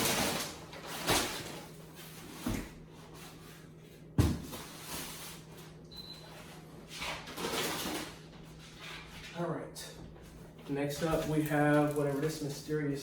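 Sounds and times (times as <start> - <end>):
cardboard boxes knocking and thudding: 4.2 - 4.7.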